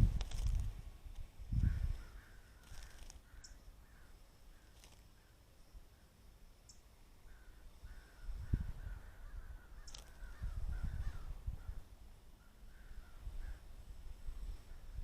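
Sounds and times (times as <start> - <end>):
crows cawing: 1.7 - 5.3, 7.3 - 11.8.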